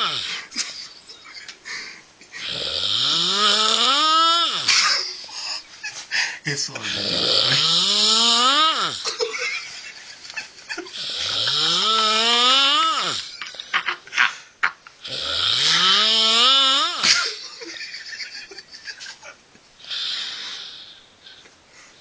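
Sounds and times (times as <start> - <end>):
loud snoring: 0.0 - 0.5, 2.4 - 4.9, 6.9 - 9.1, 10.9 - 13.3, 15.0 - 17.0.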